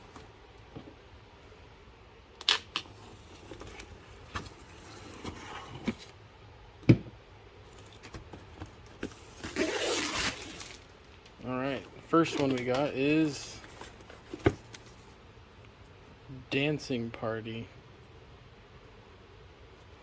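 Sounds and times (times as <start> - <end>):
packaging clicks and snips: 2.4 - 3.0, 12.2 - 12.9
packaging rustling: 7.7 - 15.2.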